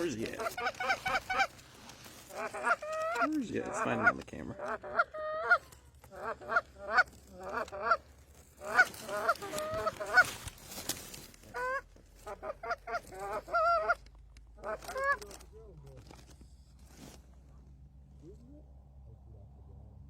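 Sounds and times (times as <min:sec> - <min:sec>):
goose call honks and clucks: 0:00.0 - 0:10.5, 0:11.4 - 0:15.6
brief rustle: 0:08.2 - 0:12.2.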